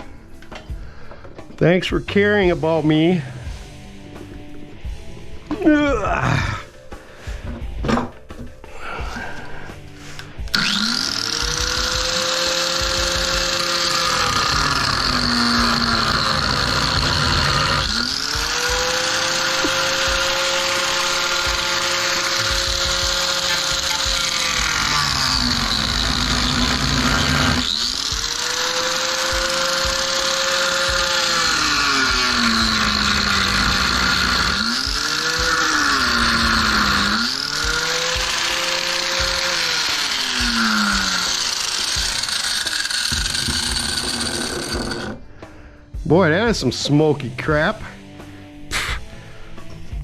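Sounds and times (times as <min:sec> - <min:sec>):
angle grinder grinding steel: 0:10.2 - 0:45.3.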